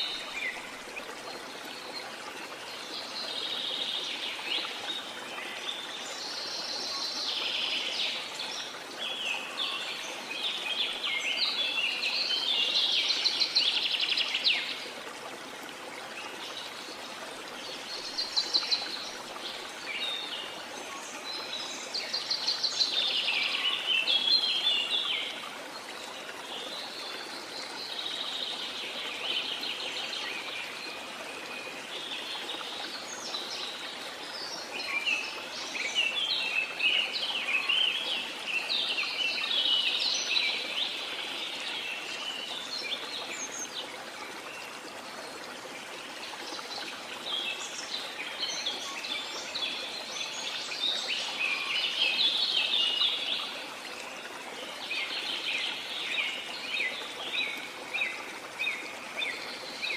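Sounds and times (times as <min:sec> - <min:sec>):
falling water rushing: 0:00.0 - 0:06.2.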